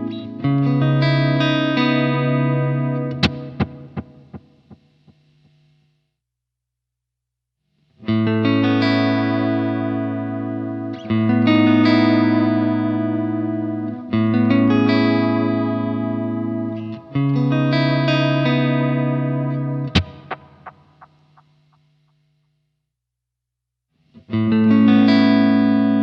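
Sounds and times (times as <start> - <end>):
electric guitar chords ringing: 0.0 - 4.5, 8.0 - 20.8, 24.3 - 26.0.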